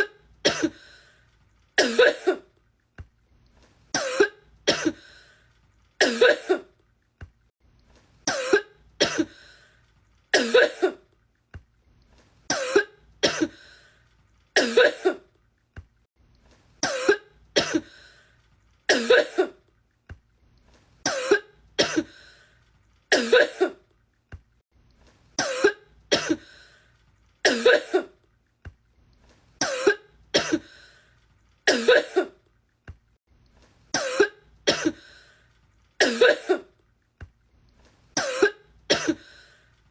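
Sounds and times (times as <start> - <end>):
woman coughing: 0.0 - 0.8, 1.8 - 2.5, 4.0 - 5.0, 6.0 - 6.8, 8.3 - 9.4, 10.4 - 11.1, 12.5 - 13.6, 14.6 - 15.3, 16.8 - 17.9, 18.9 - 19.6, 21.1 - 22.2, 23.1 - 23.8, 25.4 - 26.5, 27.5 - 28.2, 29.6 - 30.7, 31.7 - 32.4, 34.0 - 35.0, 36.0 - 36.8, 38.2 - 39.3.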